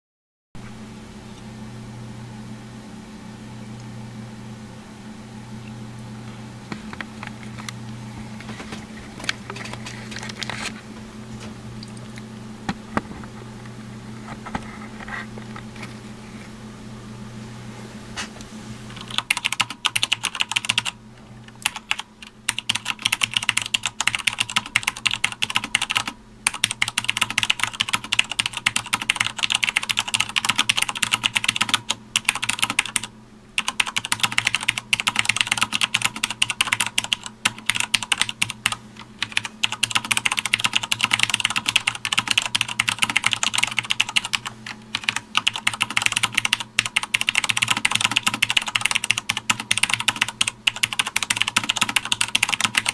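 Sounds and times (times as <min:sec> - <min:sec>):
mechanical keyboard typing: 0:19.0 - 0:21.0, 0:21.6 - 0:52.9.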